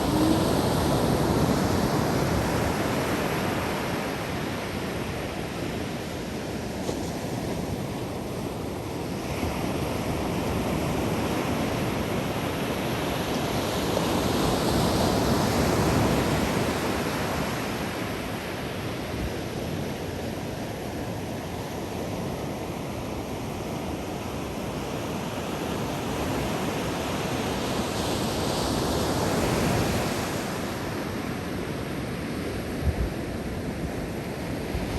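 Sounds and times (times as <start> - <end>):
ocean surf breaking: 0.0 - 4.4.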